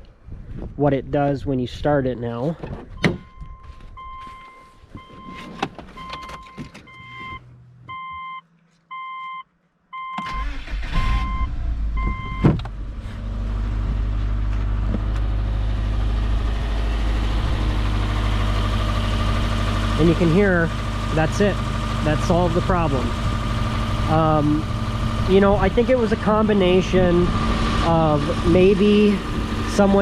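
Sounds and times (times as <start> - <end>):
car engine cranking and starting: 2.6 - 8.1, 10.0 - 30.0
car warning chime beeping: 3.1 - 5.4, 6.0 - 12.5
car engine idling: 10.2 - 30.0.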